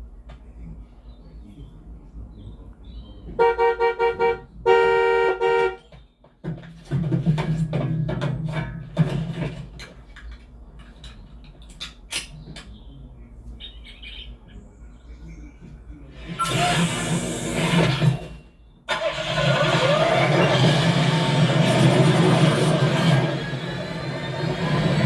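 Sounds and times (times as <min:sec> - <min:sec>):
low mechanical rumbling: 0:00.0 - 0:25.0
horn tooting: 0:03.3 - 0:06.0.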